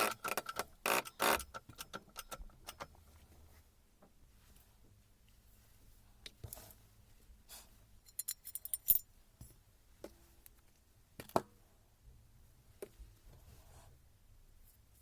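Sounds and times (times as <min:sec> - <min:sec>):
metal tools clinking on workbench: 0:08.0 - 0:09.6.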